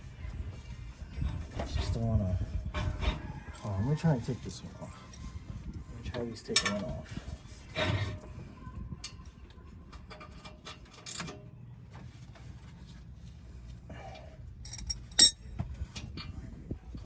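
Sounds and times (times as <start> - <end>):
hand tools clinking on metal: 14.6 - 15.5.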